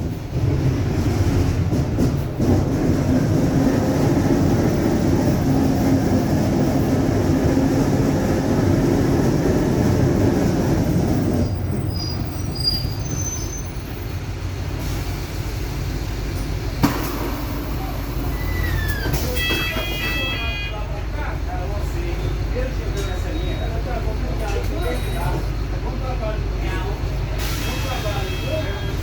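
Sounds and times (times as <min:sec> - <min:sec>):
bus differential whine: 0:00.0 - 0:29.0
bus drivetrain noise: 0:00.0 - 0:29.0
high squeaks: 0:17.6 - 0:20.7.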